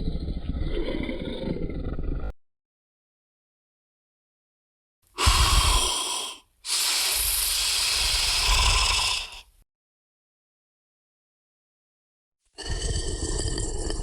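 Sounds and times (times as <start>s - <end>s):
monster breathy hisses: 5.2s - 9.6s.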